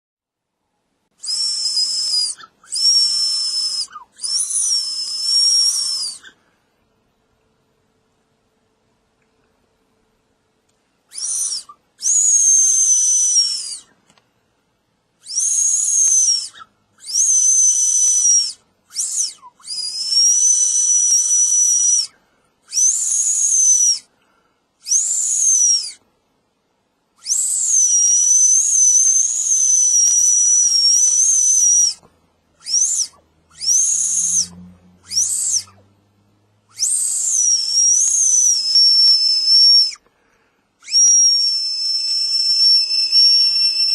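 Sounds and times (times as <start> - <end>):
shrill candy whistle: 1.1 - 6.5, 11.1 - 14.0, 15.2 - 24.2, 24.8 - 26.2, 27.1 - 35.9, 36.6 - 40.2, 40.8 - 43.9.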